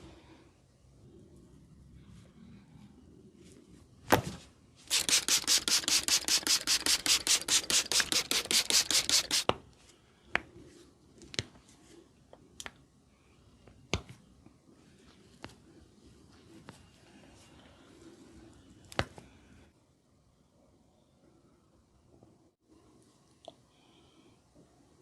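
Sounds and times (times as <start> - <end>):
hands rubbing briskly: 4.9 - 9.5.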